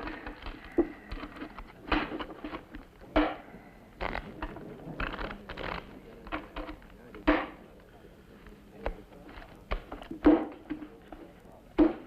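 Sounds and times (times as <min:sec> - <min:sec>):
faint room noise: 0:00.0 - 0:12.0.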